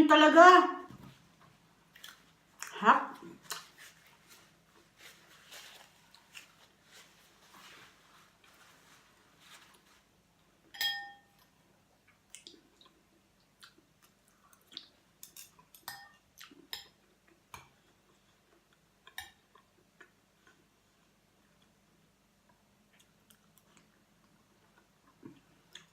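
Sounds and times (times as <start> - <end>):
utensil clinking against dish: 10.8 - 11.3.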